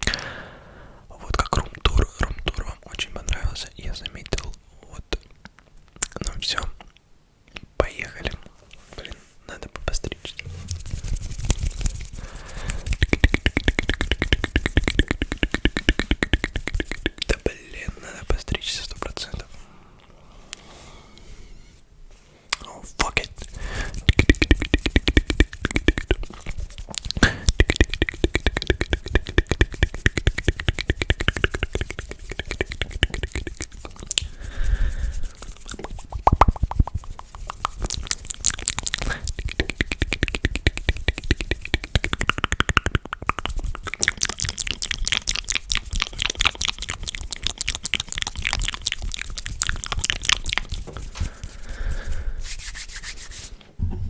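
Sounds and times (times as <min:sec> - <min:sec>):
wet mouth clicks and smacks: 0:05.4 - 0:07.7, 0:10.7 - 0:17.8, 0:22.5 - 0:53.2.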